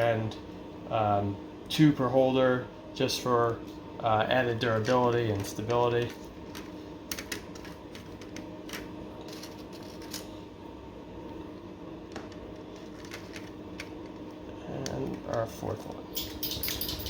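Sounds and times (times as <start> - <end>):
faint steady hum: 0.0 - 17.0
wine rack parts clicking: 16.2 - 17.0.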